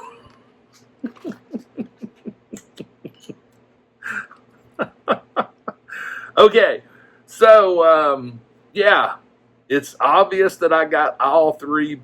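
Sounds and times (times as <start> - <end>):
man laughing: 0.0 - 6.4.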